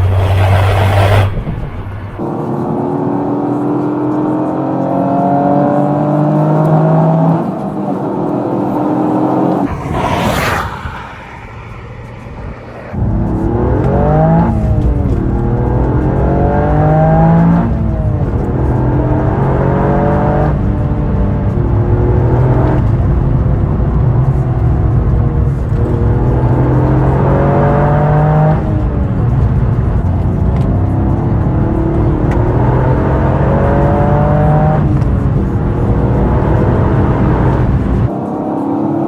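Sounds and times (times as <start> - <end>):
short rush of noise: 0.0 - 2.2, 9.6 - 13.0
car engine revving: 0.0 - 2.4.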